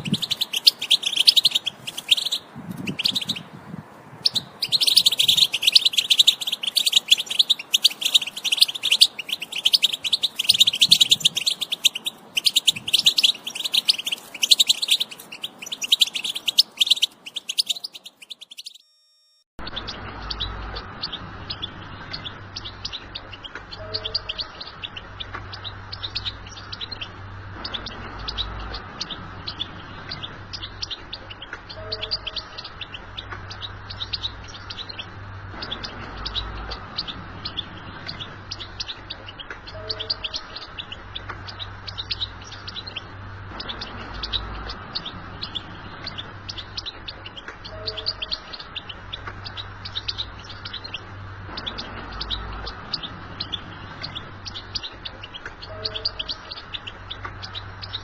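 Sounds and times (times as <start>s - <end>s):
steady low hum: 0.0s - 18.8s
goldfinch twittering song: 0.0s - 18.9s, 19.7s - 58.0s.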